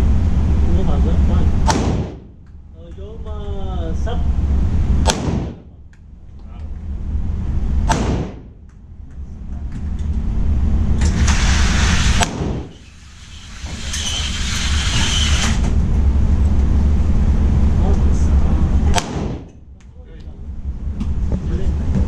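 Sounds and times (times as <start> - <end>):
steady low rumble: 0.0 - 22.0
pistol shots: 1.6 - 2.3, 5.0 - 5.7, 7.8 - 8.5, 12.2 - 12.7, 18.9 - 19.5.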